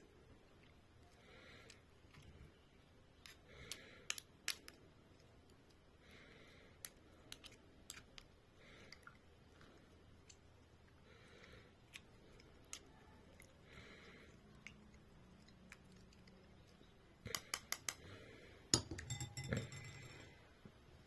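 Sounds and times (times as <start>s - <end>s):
sharp clicks and snips: 3.2s - 5.8s, 6.8s - 8.3s, 11.9s - 13.0s, 15.6s - 18.1s.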